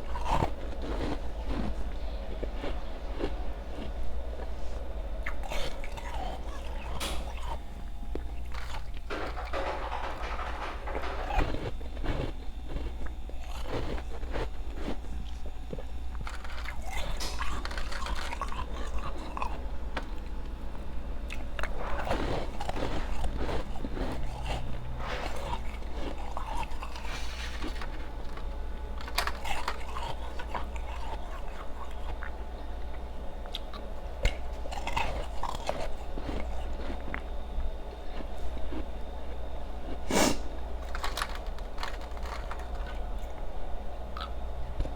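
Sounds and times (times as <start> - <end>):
grinding chews: 0.0 - 44.9
ice crunching: 8.5 - 19.6, 40.8 - 43.0.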